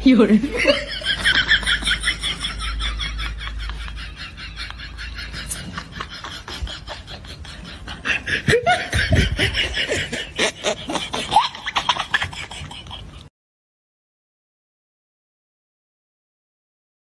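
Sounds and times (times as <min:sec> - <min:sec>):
person laughing: 0:00.4 - 0:13.3.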